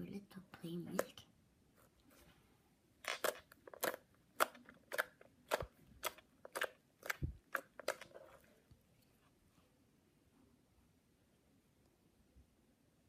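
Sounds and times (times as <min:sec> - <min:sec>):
slime squeezed with sticky pops: 0:03.0 - 0:08.4.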